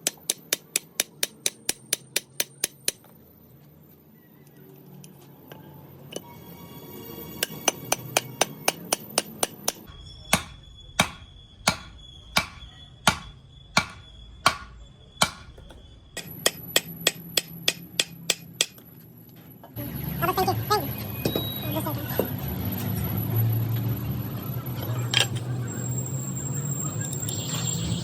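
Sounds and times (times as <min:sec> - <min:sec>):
hammer blows on metal: 0:07.4 - 0:15.5.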